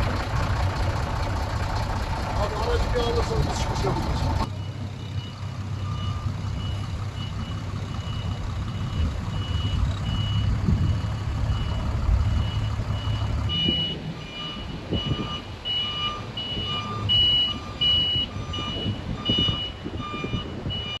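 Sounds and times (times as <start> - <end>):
engine rumble: 0.0 - 21.0
reversing alarm beeping: 4.4 - 21.0.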